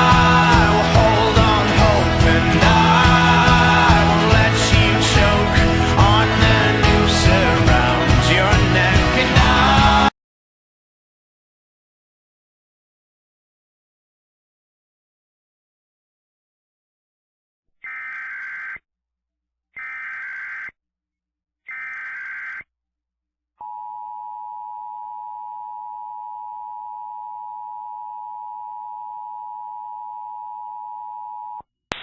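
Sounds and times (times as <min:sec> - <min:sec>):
steady two-tone alert signal: 0:17.8 - 0:18.8, 0:19.8 - 0:20.7, 0:21.7 - 0:22.6
warbling data bursts: 0:17.8 - 0:18.8, 0:19.8 - 0:20.7, 0:21.7 - 0:22.6.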